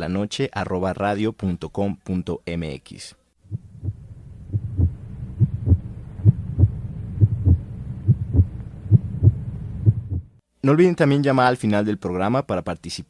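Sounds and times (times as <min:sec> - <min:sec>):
faint low hum: 0:03.1 - 0:10.8
heartbeat double thump: 0:03.5 - 0:10.4.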